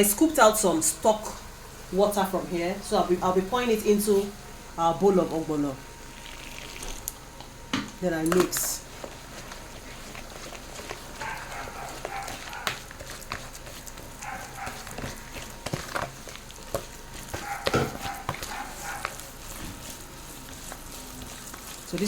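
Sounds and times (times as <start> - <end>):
wet stirring: 0.0 - 22.0
spoon knocking and scraping bowl: 10.5 - 22.0.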